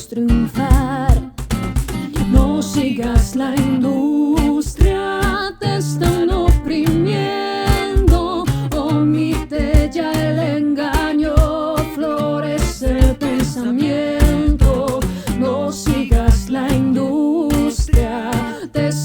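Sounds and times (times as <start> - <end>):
bass: 0.0 - 19.0
person singing with vibrato: 0.0 - 19.0
steady drum beat: 0.7 - 3.8, 4.4 - 5.5, 6.1 - 7.1, 7.7 - 10.4, 11.0 - 12.0, 12.6 - 18.6.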